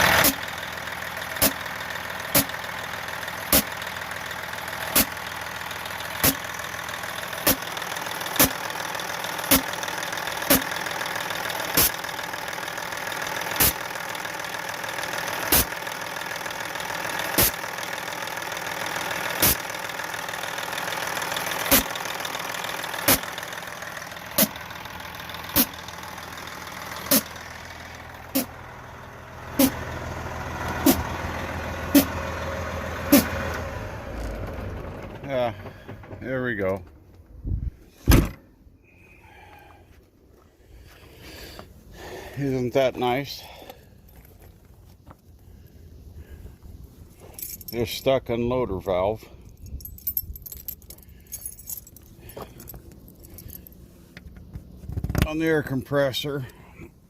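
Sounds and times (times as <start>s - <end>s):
air compressor humming: 2.3s - 18.1s, 18.9s - 29.9s.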